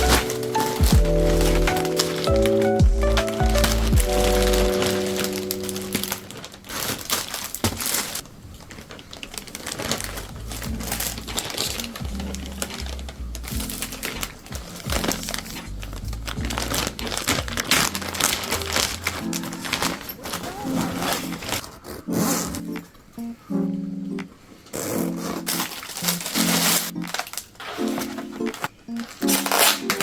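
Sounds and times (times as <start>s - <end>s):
background music with bass: 0.0s - 5.2s, 10.0s - 19.7s
packaging crinkling: 0.0s - 22.1s, 24.7s - 30.0s.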